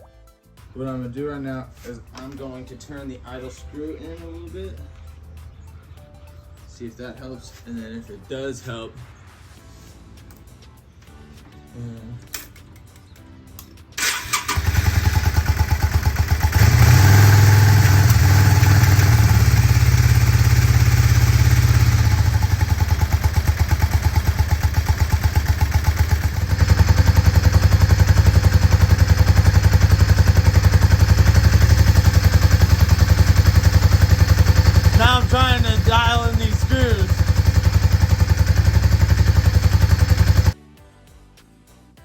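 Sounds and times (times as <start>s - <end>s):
motorcycle engine idling: 14.0s - 40.6s.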